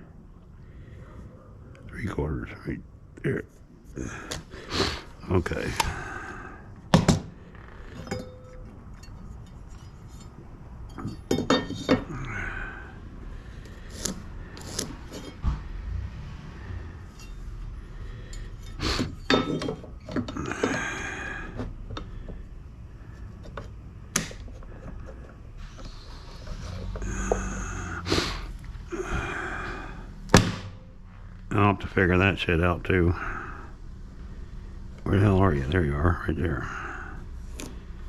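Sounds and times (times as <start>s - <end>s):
hand tools clinking on bench: 8.0s - 12.1s, 18.3s - 20.7s.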